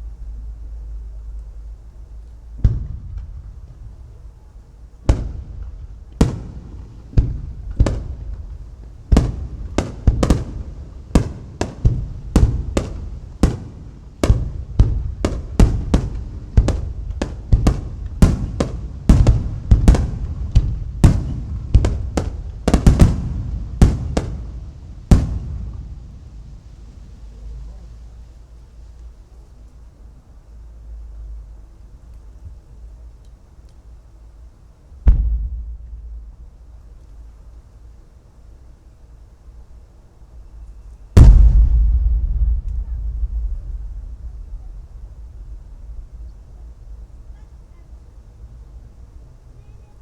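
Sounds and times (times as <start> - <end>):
firework shells booming: 0.0 - 26.9, 34.9 - 37.5, 40.8 - 48.8.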